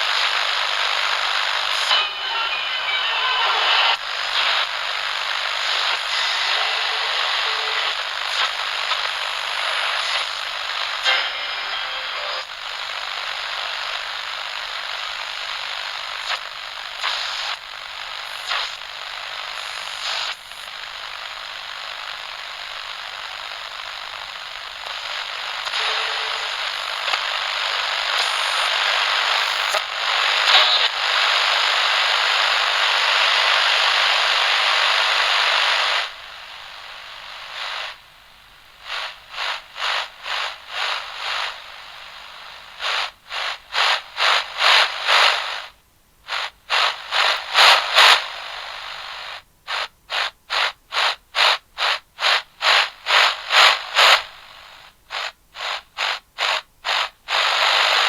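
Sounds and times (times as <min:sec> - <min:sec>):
crackling static hiss: 0:00.0 - 0:58.0.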